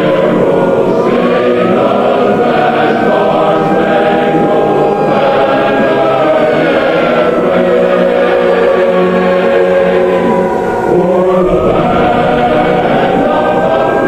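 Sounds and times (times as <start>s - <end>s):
choir-like drone: 0.0s - 14.0s
wailing sirens: 0.0s - 14.0s.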